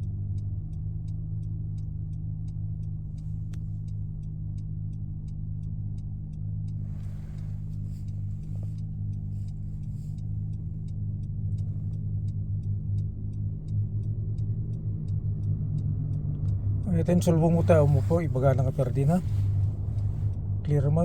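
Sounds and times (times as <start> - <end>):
faint regular ticking: 0.0 - 21.0
low humming noise: 6.8 - 15.4, 16.6 - 21.0.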